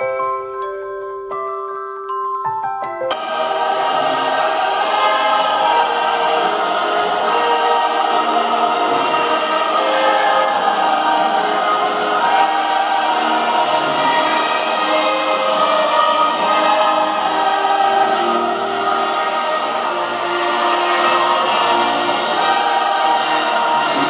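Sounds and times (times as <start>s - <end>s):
choir singing: 3.1s - 24.0s.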